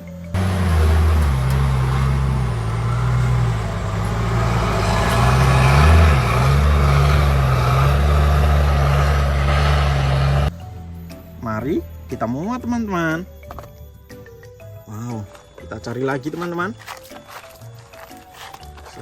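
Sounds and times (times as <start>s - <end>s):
heavy truck engine running: 0.4s - 10.5s.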